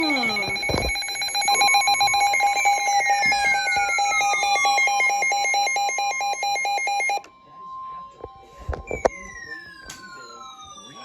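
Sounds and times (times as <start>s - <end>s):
electronic alarm beeping rapidly: 0.0s - 7.2s
steady attention tone: 0.0s - 7.3s.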